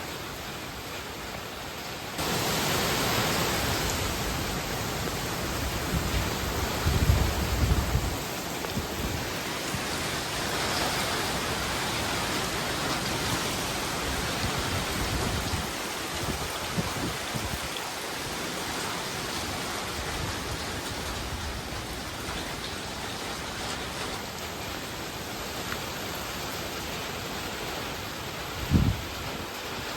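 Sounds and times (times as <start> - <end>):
wind and heavy rain: 0.0 - 29.9
gusts buffeting microphone: 5.4 - 10.0, 14.3 - 17.7, 28.5 - 29.9.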